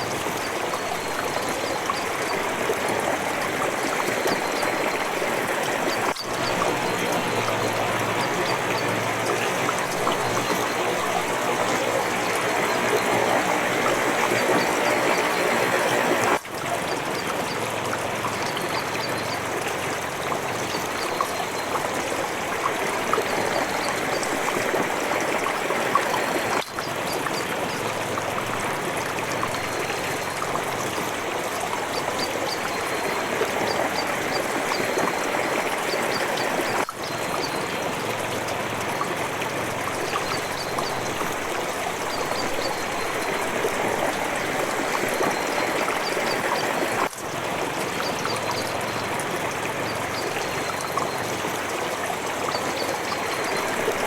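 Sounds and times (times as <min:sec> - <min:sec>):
water trickling and dripping: 0:00.0 - 0:54.0.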